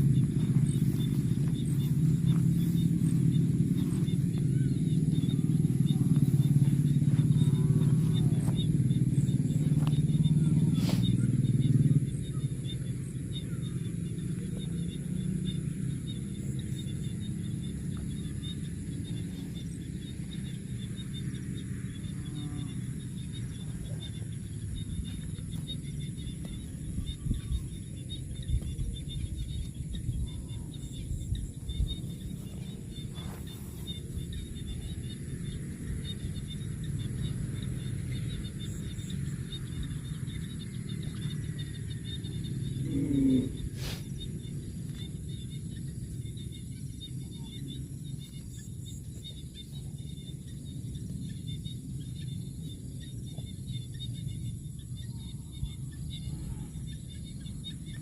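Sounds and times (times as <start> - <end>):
low rumble: 0.0 - 13.2
insects chirring: 0.0 - 58.0.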